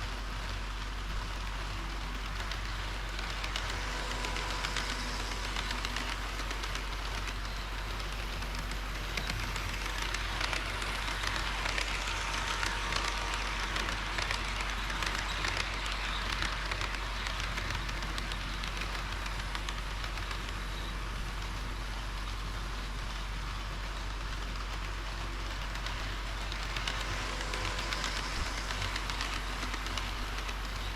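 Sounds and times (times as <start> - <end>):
model train wheels on rail: 0.0 - 30.9.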